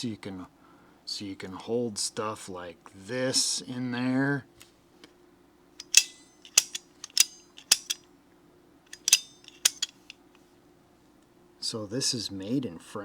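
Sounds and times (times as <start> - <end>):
locking pliers clicking: 5.8 - 8.0, 8.9 - 10.1.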